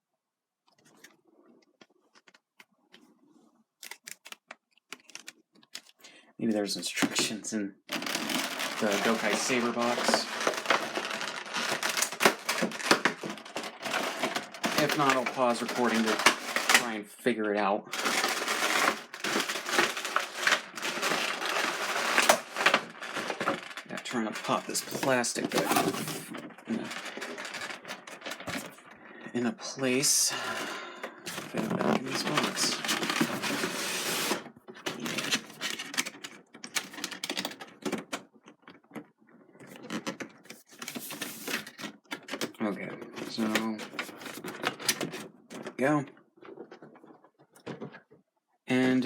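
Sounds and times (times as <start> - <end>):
plastic rustling: 6.6 - 17.0, 17.9 - 48.2
plastic packaging crinkling: 6.9 - 17.0, 17.9 - 29.2, 30.0 - 45.4.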